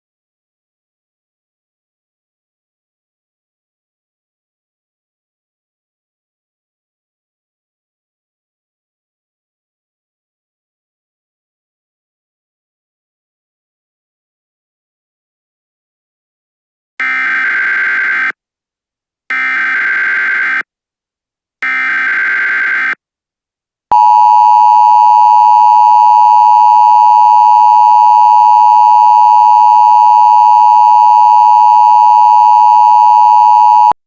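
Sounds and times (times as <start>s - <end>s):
shrill buzzy data tones: 17.0s - 18.3s
two-tone attention signal: 23.9s - 34.0s.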